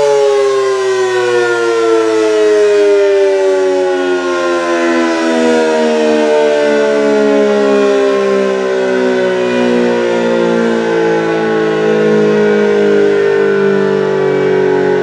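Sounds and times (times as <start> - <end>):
warning siren steady wail: 0.0 - 15.0.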